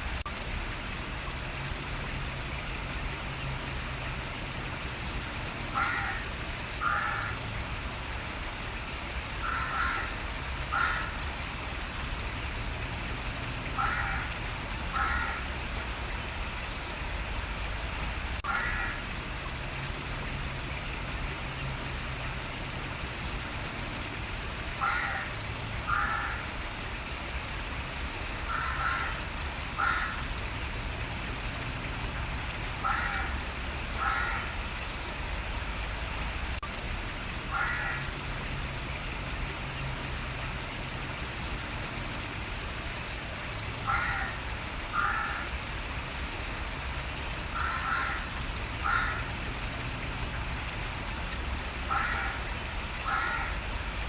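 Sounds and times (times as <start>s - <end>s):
running water flowing: 0.0s - 54.0s
bird calling: 28.5s - 29.2s.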